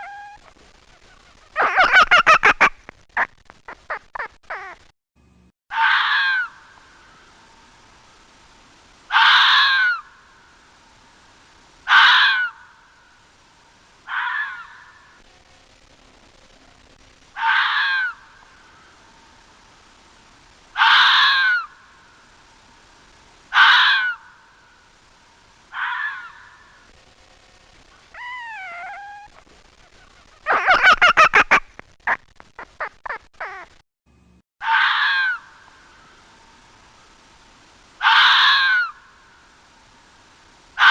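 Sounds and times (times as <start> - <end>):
fox stuttering chatter: 0.0 - 4.9, 28.2 - 33.8
fox screaming bark: 5.7 - 6.5, 9.1 - 10.1, 11.9 - 12.7, 14.1 - 15.1, 17.4 - 18.2, 20.8 - 21.8, 23.5 - 24.3, 25.7 - 26.7, 28.1 - 29.4, 34.6 - 35.5, 38.0 - 39.0.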